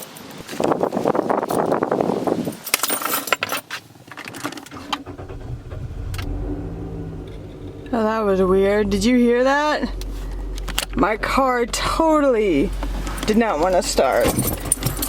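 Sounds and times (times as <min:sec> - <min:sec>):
car keys jangling: 0:02.4 - 0:05.6, 0:12.7 - 0:15.0
car engine starting and running: 0:04.7 - 0:15.0.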